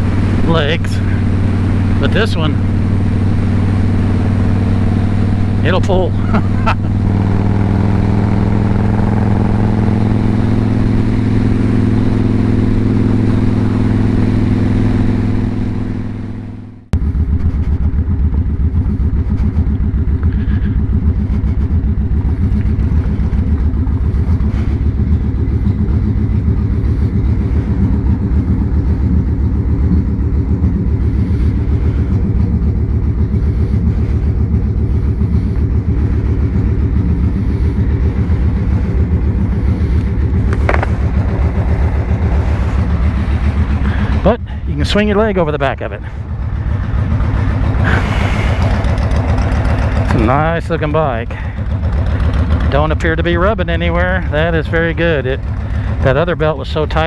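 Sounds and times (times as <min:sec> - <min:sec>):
motorcycle engine idling: 0:00.0 - 0:57.0
motorcycle engine running: 0:00.0 - 0:57.0.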